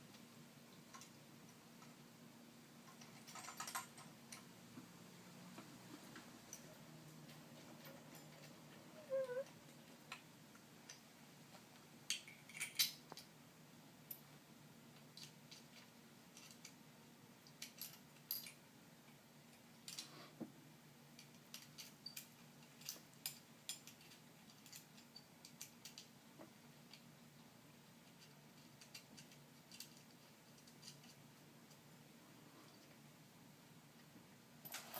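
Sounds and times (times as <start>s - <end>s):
small metal parts clicking and clinking: 0.8s - 2.0s, 2.8s - 4.5s, 6.4s - 11.0s, 12.1s - 13.3s, 15.0s - 16.8s, 17.4s - 20.2s, 21.1s - 26.2s, 28.0s - 31.9s, 34.6s - 34.9s.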